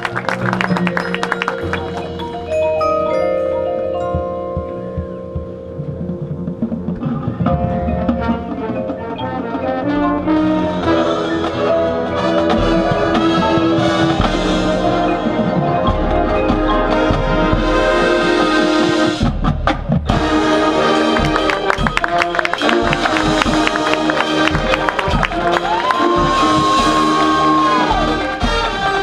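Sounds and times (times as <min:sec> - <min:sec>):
pitched mallet percussion: 0:00.0 - 0:19.2
marching band playing: 0:00.0 - 0:29.0.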